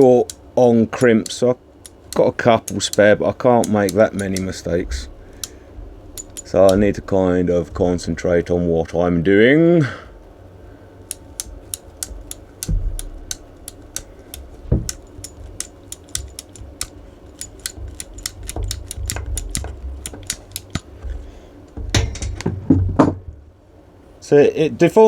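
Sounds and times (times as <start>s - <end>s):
crimping tool clicking: 0.0s - 8.5s, 11.0s - 22.5s
handling noise: 1.8s - 9.0s, 10.1s - 24.1s.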